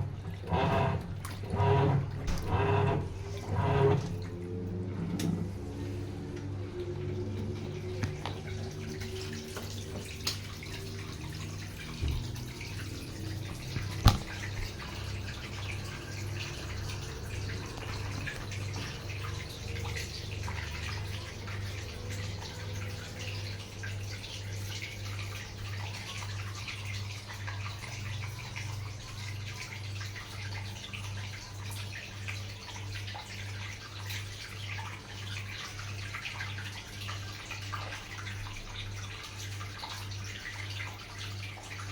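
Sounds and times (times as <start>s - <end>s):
low pulsing hum: 0.0s - 23.8s
water splashing into washing machine: 0.0s - 41.9s.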